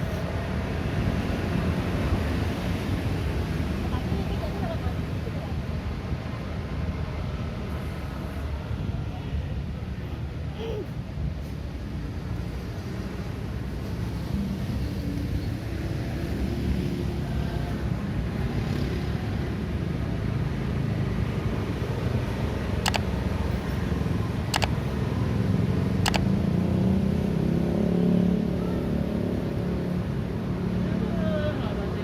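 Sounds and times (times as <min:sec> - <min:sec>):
street traffic: 0:00.0 - 0:32.0
sharp clicks: 0:22.8 - 0:23.2, 0:24.5 - 0:24.8, 0:26.0 - 0:26.3.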